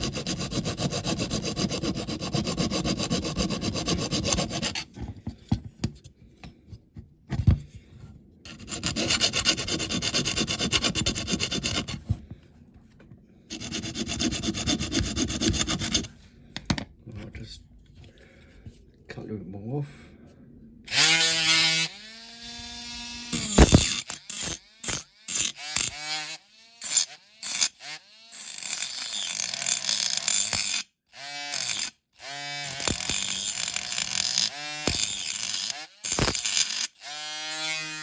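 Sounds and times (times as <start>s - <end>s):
rotary tool whining cutting metal: 20.9s - 38.0s.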